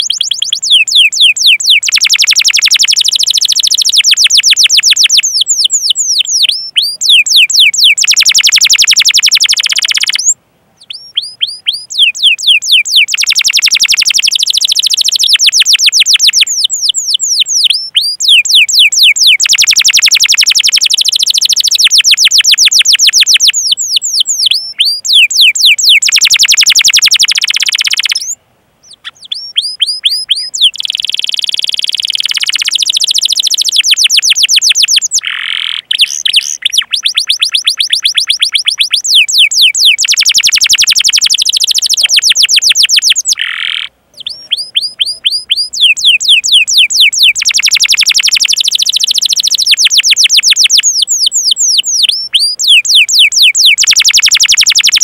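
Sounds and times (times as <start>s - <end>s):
canary singing trills: 0.0s - 55.0s.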